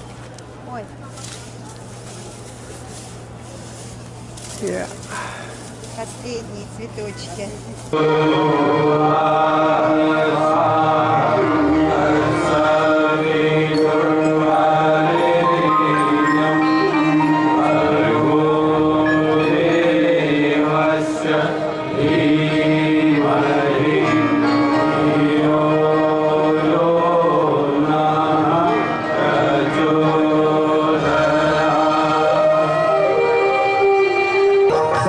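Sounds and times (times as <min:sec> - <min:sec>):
sustained instrumental tones: 0:07.9 - 0:35.0
voices chanting a melody: 0:07.9 - 0:35.0.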